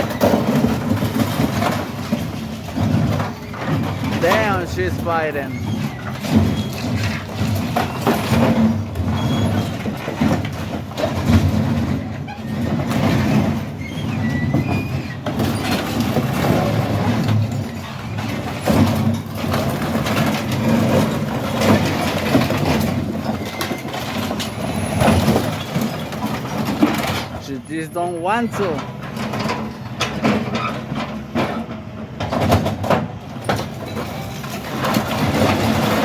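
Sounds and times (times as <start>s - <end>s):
diesel engine under load: 0.0s - 36.0s.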